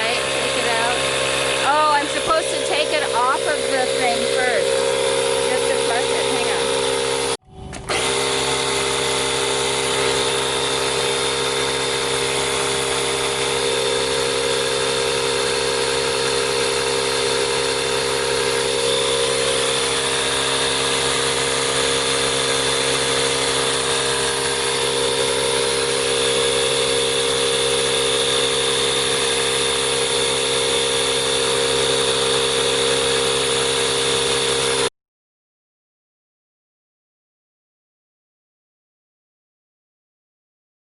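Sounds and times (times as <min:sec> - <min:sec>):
small tire inflator running: 0:00.0 - 0:34.9.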